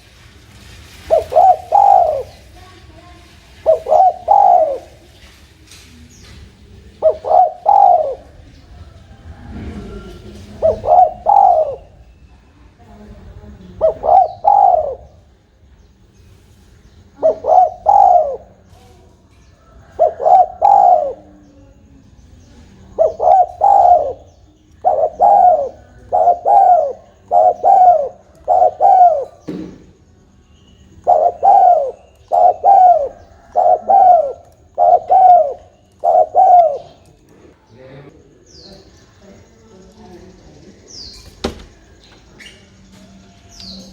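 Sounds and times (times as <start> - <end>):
dove cooing: 0.9 - 5.5, 6.2 - 12.2, 13.5 - 15.3, 17.1 - 29.9, 30.9 - 37.4.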